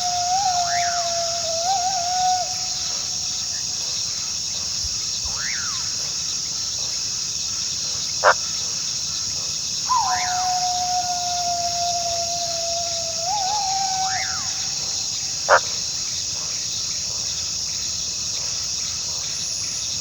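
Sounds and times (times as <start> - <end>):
coyote yip: 0.0 - 3.1, 9.9 - 15.6
coyote howling: 0.0 - 3.5, 9.9 - 15.7
insect chorus: 0.0 - 20.0.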